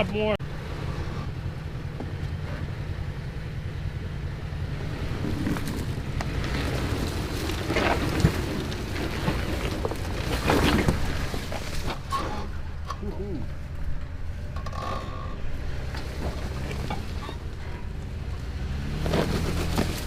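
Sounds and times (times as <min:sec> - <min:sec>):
engine low rumble: 0:00.0 - 0:20.0
tyres crackling on rock: 0:04.9 - 0:13.2, 0:15.7 - 0:20.0.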